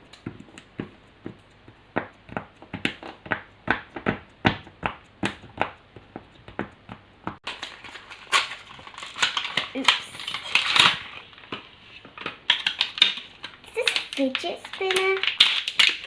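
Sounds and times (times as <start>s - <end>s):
plastic packaging clicks and crinkles: 7.4s - 16.0s.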